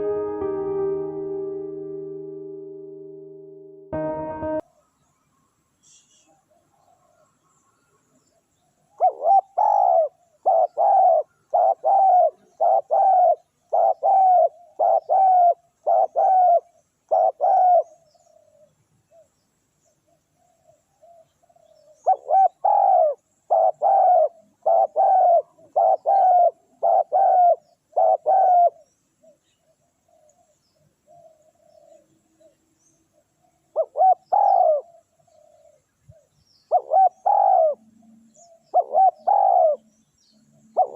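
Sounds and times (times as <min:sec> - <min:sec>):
dove cooing: 0:09.0 - 0:18.7, 0:20.5 - 0:29.4, 0:33.7 - 0:39.8.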